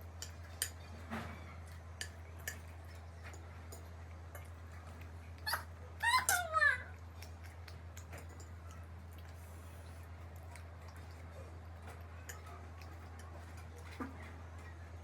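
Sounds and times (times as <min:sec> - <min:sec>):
soft wet chewing: 0:00.0 - 0:15.0
steady low hum: 0:00.0 - 0:15.0.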